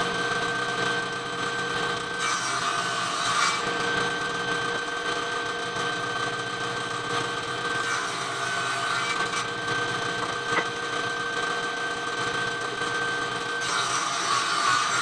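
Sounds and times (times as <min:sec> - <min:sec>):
circular saw cutting wood: 0:02.2 - 0:04.0, 0:07.7 - 0:09.6, 0:13.6 - 0:15.0.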